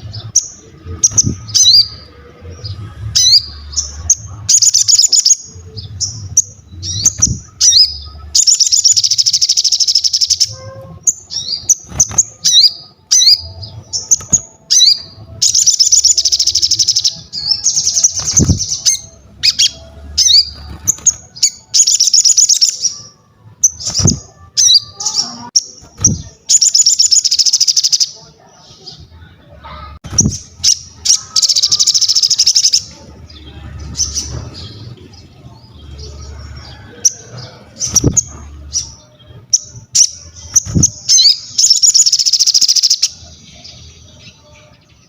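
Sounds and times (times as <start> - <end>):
bird whistles and chattering trills: 39.5 - 43.2.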